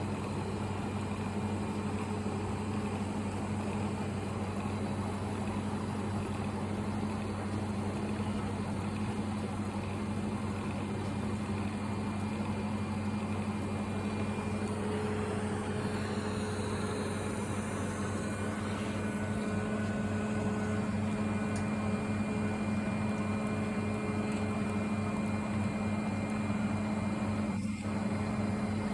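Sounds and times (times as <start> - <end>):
welding arc buzzing hum: 0.0 - 28.9.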